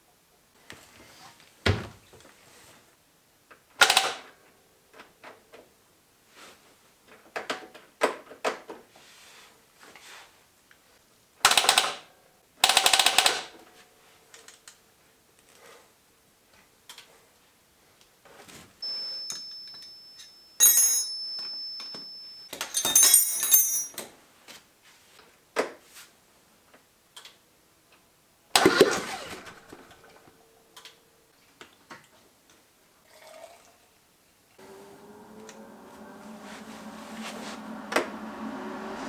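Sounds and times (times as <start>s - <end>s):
metal tools clinking: 18.8s - 24.1s
jangling metal clatter: 20.6s - 24.1s.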